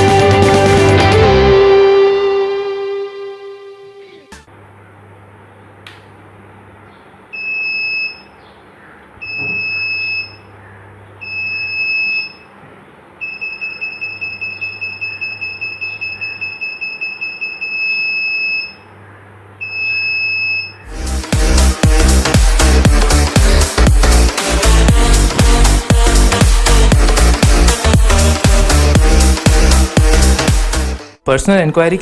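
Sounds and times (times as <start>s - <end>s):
electronic dance music: 0.0s - 4.5s, 20.9s - 31.2s
alarm buzzer beeping: 7.4s - 8.4s, 9.2s - 10.5s, 11.2s - 12.5s, 13.2s - 18.9s, 19.6s - 20.9s.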